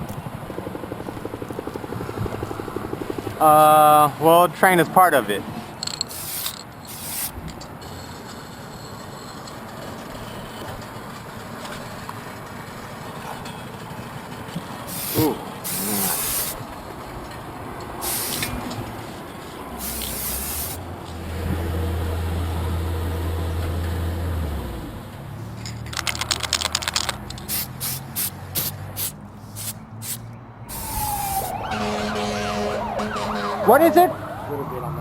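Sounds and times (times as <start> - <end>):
spray paint can hissing: 0.0 - 3.5, 5.8 - 7.4, 14.9 - 16.7, 18.0 - 18.6, 19.8 - 20.8, 26.1 - 31.6
low steady hum: 0.0 - 4.3.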